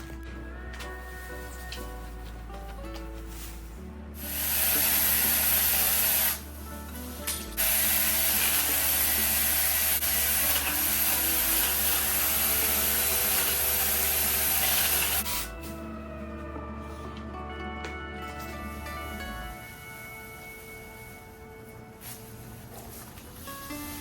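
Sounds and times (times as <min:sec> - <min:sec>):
chainsaw cutting branches: 0:04.2 - 0:06.6, 0:07.3 - 0:15.5.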